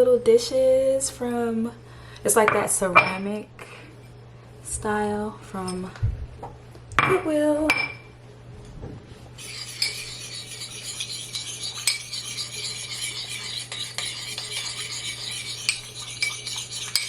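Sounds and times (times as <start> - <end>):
metal utensil scraping ceramic dish: 9.4 - 17.0.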